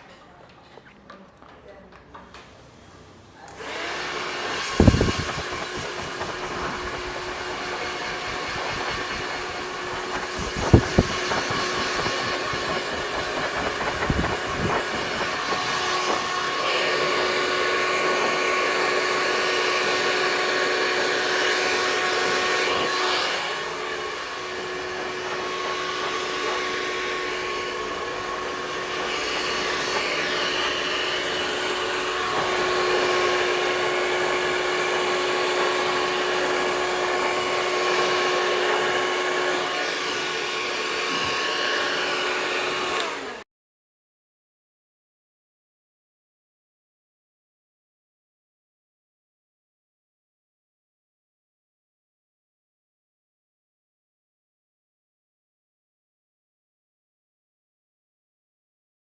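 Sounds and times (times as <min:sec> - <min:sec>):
hair dryer running: 0:03.4 - 0:43.4.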